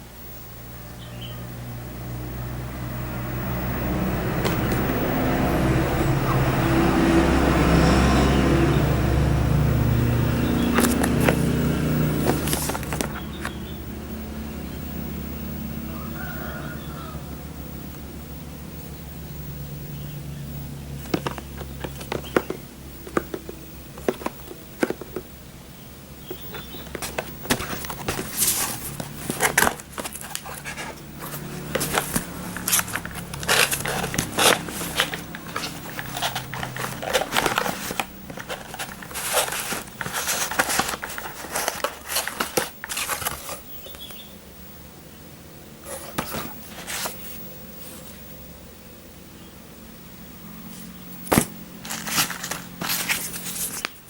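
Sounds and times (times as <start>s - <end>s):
plastic and cardboard crinkling: 4.0s - 6.1s, 10.4s - 13.8s, 20.9s - 25.6s, 26.2s - 44.3s, 45.8s - 48.2s, 50.7s - 54.0s.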